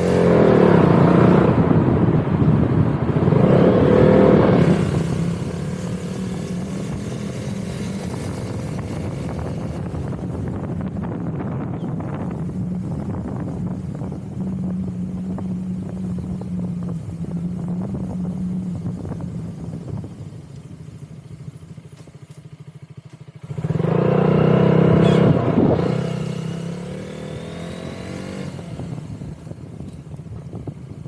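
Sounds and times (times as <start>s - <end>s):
wind rushing: 0.0s - 20.2s
motorcycle engine: 0.0s - 31.0s.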